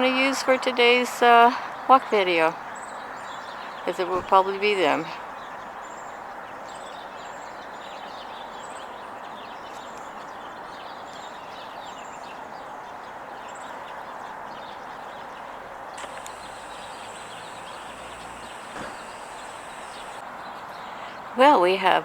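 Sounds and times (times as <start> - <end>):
outdoor background hiss: 0.0 - 5.6, 15.6 - 22.0
click: 16.0 - 20.2
thin high whine: 16.0 - 20.2
small birds chirping: 16.0 - 21.8.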